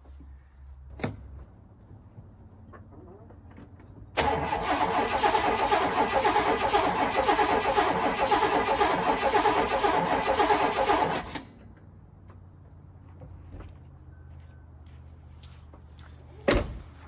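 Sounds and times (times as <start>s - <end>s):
starter motor cranking engine: 4.2s - 11.5s.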